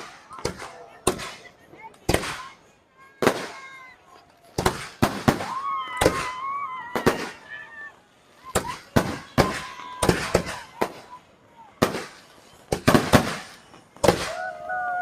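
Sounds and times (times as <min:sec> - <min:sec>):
fireworks exploding: 0:00.0 - 0:15.0
crowd shouting and cheering: 0:05.3 - 0:11.8, 0:14.1 - 0:15.0.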